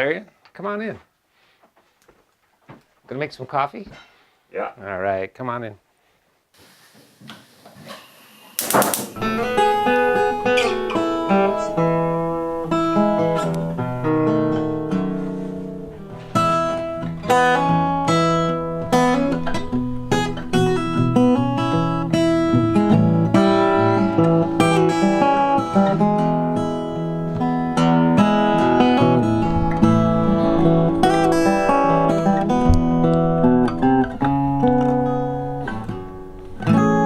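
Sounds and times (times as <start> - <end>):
acoustic guitar blues: 9.2 - 37.0.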